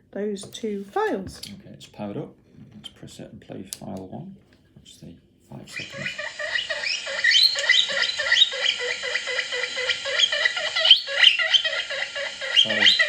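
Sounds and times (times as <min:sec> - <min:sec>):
guinea pig squeals through speaker: 0:05.7 - 0:13.0.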